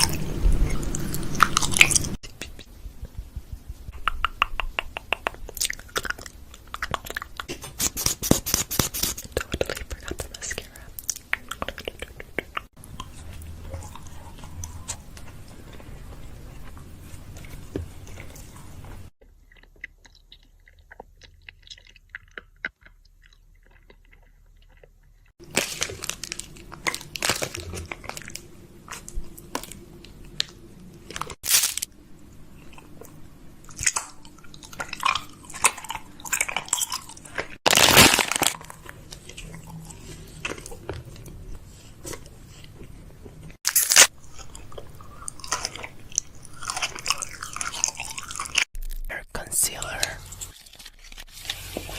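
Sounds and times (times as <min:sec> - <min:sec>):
close-up crunching: 0:12.8 - 0:31.9, 0:32.6 - 0:51.8.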